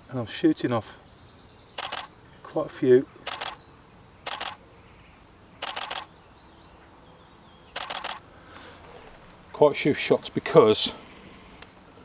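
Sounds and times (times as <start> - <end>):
camera shutter bursts: 1.8 - 2.2, 3.2 - 3.6, 4.2 - 4.6, 5.6 - 6.1, 7.8 - 8.2.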